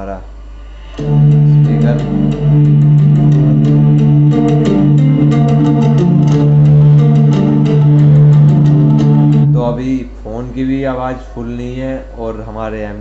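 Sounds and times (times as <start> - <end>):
song through car speakers: 0.7 - 9.9.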